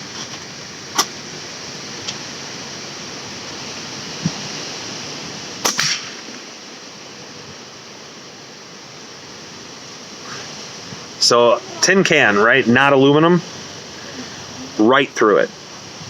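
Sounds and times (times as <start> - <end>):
steady background hiss: 0.0 - 16.0
steel ball hitting tin can: 5.7 - 6.4.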